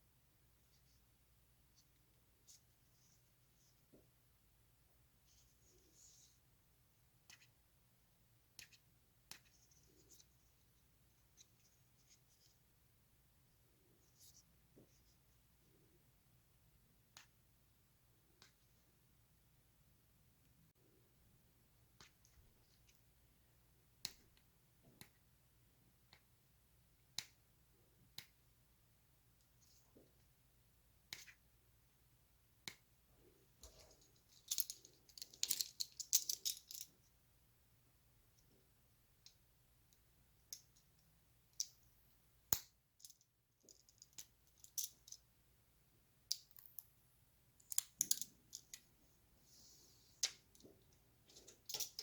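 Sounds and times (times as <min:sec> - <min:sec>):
plastic parts clicking and tapping: 0:33.6 - 0:36.9, 0:47.6 - 0:48.9.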